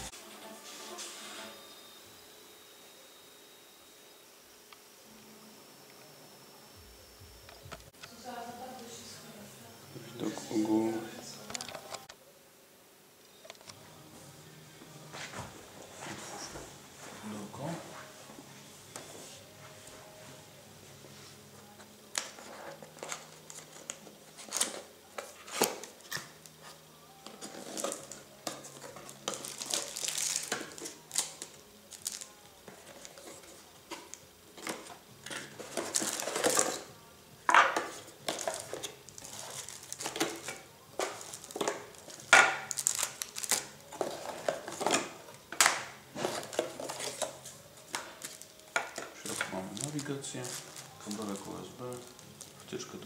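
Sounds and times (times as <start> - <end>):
packaging rustling and crinkling: 22.1 - 36.9, 37.8 - 53.0.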